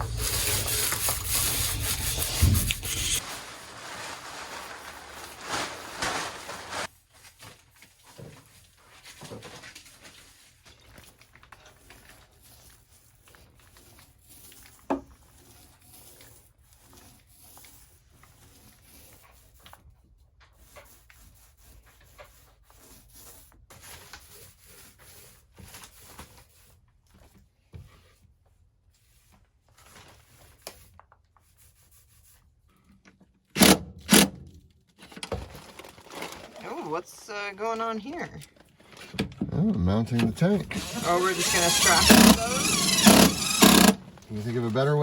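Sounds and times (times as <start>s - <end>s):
paint roller rubbing over wood: 0.0s - 7.0s, 12.4s - 19.4s, 40.4s - 45.0s.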